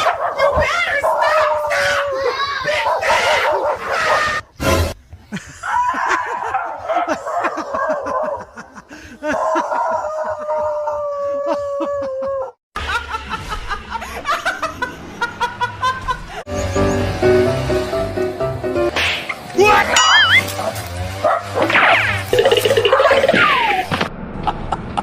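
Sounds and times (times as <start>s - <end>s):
high-pitched held voice: 19.6s - 20.5s.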